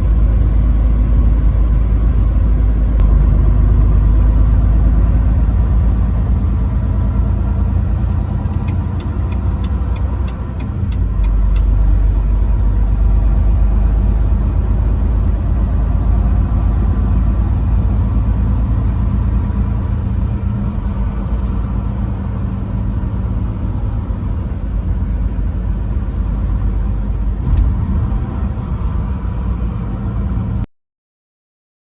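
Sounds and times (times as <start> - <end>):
truck engine and road rumble: 0.0 - 30.7.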